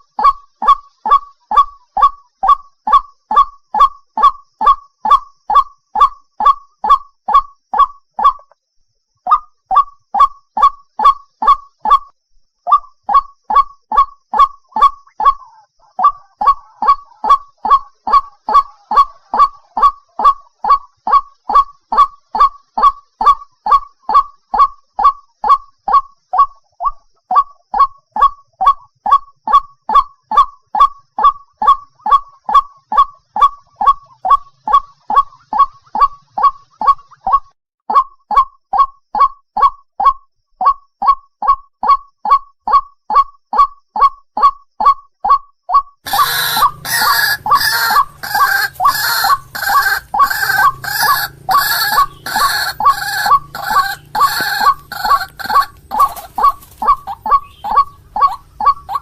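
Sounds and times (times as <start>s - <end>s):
bird harsh croaking calls: 0.0s - 8.6s, 12.7s - 37.4s, 46.0s - 59.0s.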